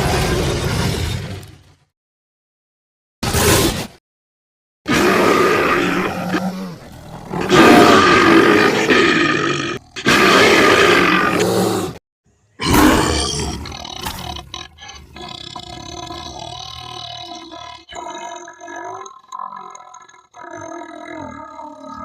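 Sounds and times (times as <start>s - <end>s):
person roaring into tube: 4.9s - 12.0s, 12.6s - 19.2s.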